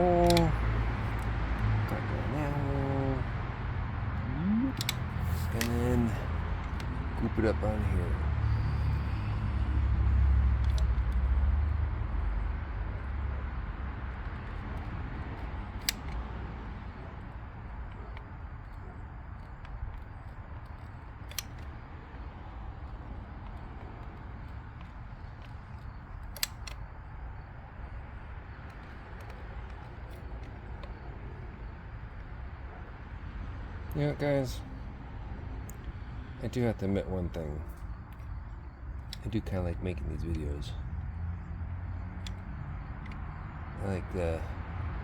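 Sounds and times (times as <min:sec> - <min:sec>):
sharp clicks: 0:00.0 - 0:03.3, 0:04.1 - 0:07.7, 0:08.4 - 0:11.4, 0:14.2 - 0:34.9, 0:35.6 - 0:44.5
passing motor vehicle rumble: 0:00.0 - 0:45.0
sharp click: 0:00.2 - 0:01.3, 0:04.7 - 0:06.9, 0:20.7 - 0:21.7, 0:24.8 - 0:26.9.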